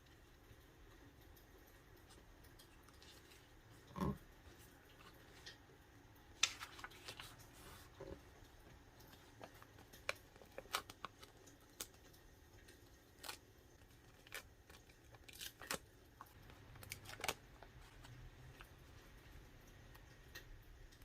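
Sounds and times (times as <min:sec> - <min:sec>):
paper rustling and clicks: 0:06.4 - 0:08.2, 0:09.0 - 0:18.8.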